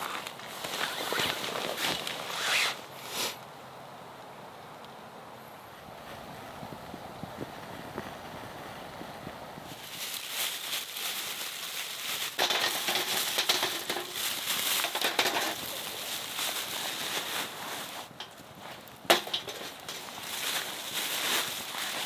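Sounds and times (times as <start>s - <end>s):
crunching and rustling: 0.0s - 3.3s, 9.7s - 22.0s.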